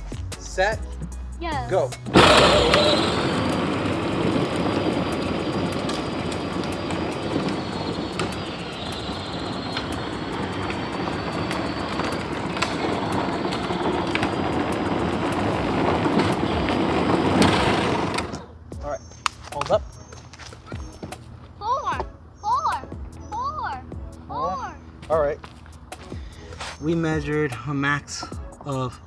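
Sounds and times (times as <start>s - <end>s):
plastic wheels clattering on pavement: 2.0s - 23.9s
faint electric motor whine: 2.1s - 18.4s.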